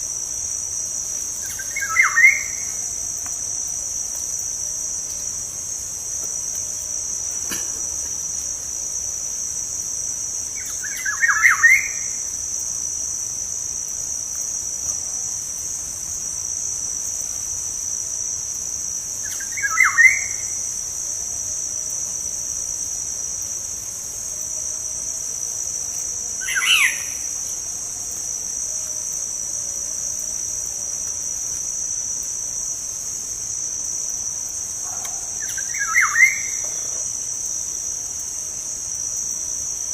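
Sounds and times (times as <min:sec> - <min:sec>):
high-pitched insect drone: 0:16.4 - 0:39.9.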